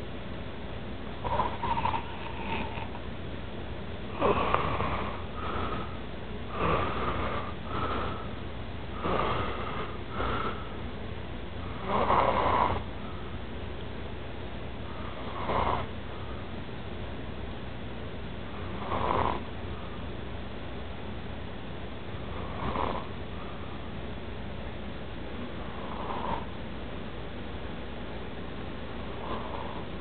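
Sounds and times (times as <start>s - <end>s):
man snoring loudly: 1.2s - 3.0s, 4.1s - 8.3s, 9.0s - 10.6s, 11.7s - 12.8s, 15.2s - 15.9s, 18.8s - 19.4s, 22.4s - 23.1s, 25.7s - 26.5s, 29.2s - 29.9s.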